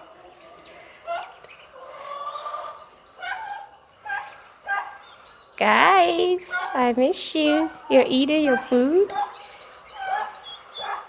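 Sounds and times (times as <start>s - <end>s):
turkey poults calling: 1.1s - 5.0s.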